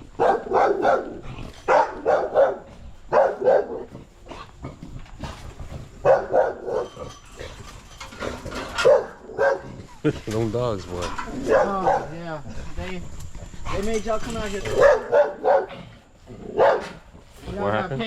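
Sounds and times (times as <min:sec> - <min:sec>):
dog barking: 0:00.1 - 0:04.0, 0:06.0 - 0:07.0, 0:08.7 - 0:09.8, 0:11.3 - 0:12.2, 0:14.7 - 0:15.8, 0:16.4 - 0:17.0.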